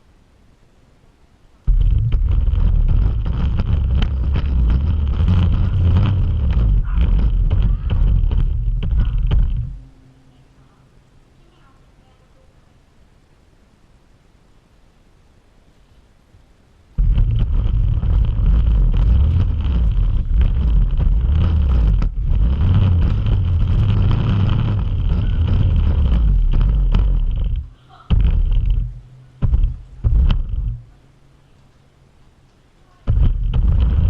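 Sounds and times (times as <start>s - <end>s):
heavy low rumble: 1.7s - 12.2s, 17.0s - 31.6s, 33.0s - 34.0s.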